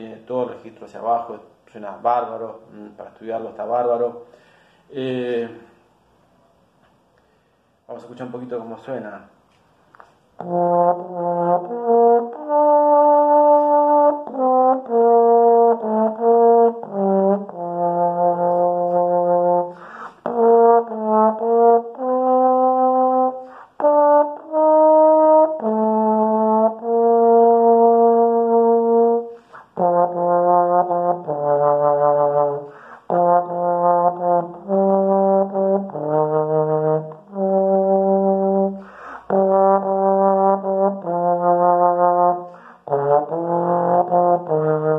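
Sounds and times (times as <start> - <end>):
player breathing: 4.3 - 4.9, 19.7 - 20.3, 29.4 - 29.8, 32.7 - 33.1, 38.8 - 39.3, 42.5 - 42.9
trombone playing slow melody: 10.4 - 44.9.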